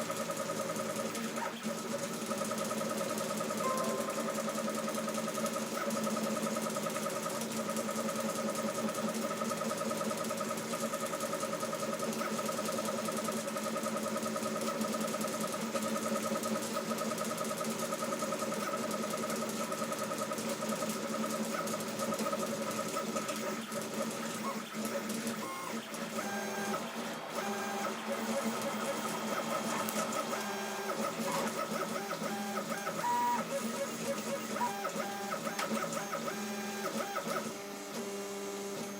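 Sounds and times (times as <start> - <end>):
stepper motors whining: 24.1 - 34.7.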